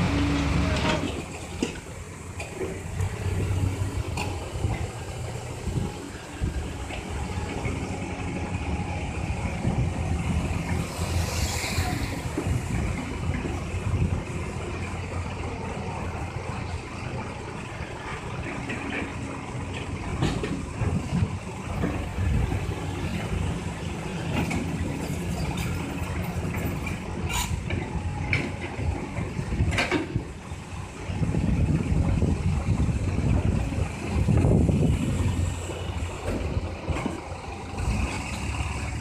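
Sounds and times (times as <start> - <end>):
excavator diesel engine: 0.0 - 39.0.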